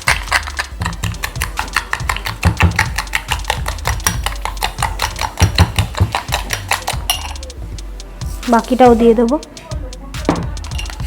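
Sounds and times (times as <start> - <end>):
spoon clicking against bowl: 0.0 - 7.5
background music: 0.0 - 11.0.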